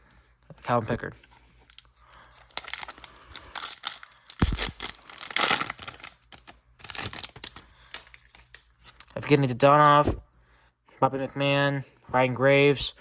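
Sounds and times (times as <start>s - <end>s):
wrapper tearing and crinkling: 2.4s - 9.1s.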